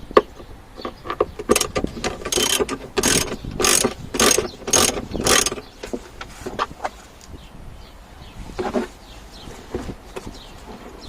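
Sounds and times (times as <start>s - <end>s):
ratchet wrench rattling: 0.8s - 6.0s.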